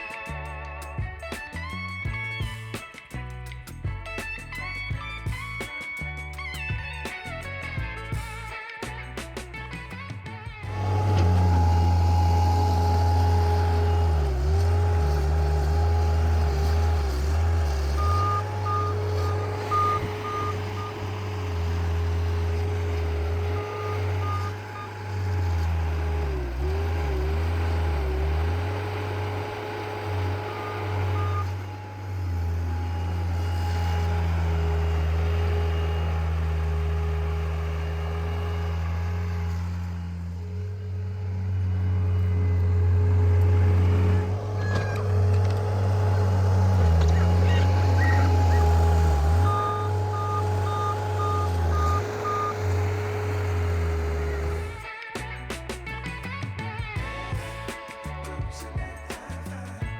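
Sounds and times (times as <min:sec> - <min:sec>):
diesel engine running: 0:09.1 - 0:59.9
backup alarm beeping: 0:17.4 - 0:25.9, 0:44.2 - 0:54.7.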